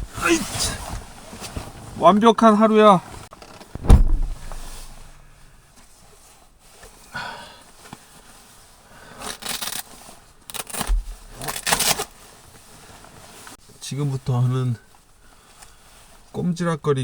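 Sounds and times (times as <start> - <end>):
rustling and scraping: 0.4 - 2.0, 3.1 - 7.1, 7.7 - 13.6.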